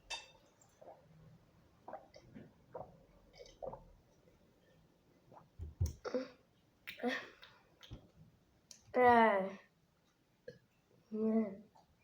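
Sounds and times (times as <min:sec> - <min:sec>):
child gulping a drink: 0:01.8 - 0:04.2.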